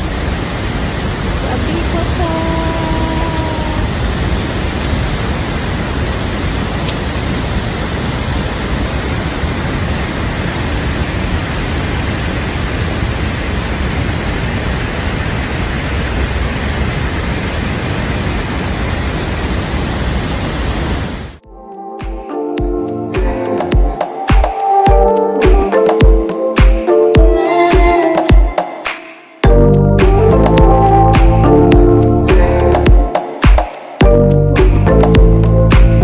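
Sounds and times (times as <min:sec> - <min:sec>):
waterfall roaring: 0:00.0 - 0:21.4.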